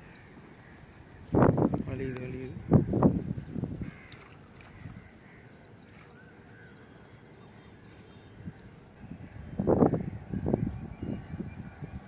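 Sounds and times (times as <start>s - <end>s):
distant bird chirps: 0.0s - 12.0s
crows cawing loudly: 3.8s - 5.5s.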